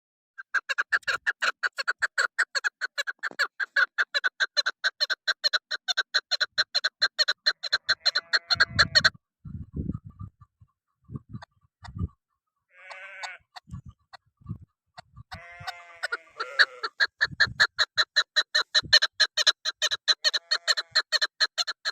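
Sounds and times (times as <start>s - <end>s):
partridge clucking: 0.4s - 9.1s, 15.0s - 21.9s.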